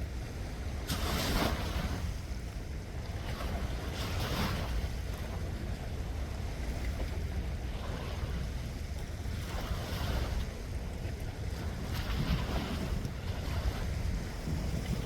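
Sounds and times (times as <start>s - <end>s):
sea waves washing in: 0.0s - 2.5s, 9.3s - 15.0s
wind rumble on microphone: 0.0s - 15.0s.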